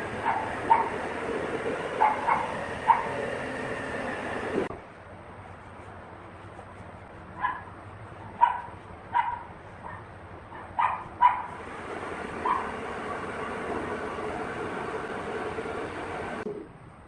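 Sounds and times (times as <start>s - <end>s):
dog barking: 0.2s - 1.0s, 2.0s - 3.2s, 7.4s - 7.7s, 8.4s - 11.6s, 12.4s - 12.8s.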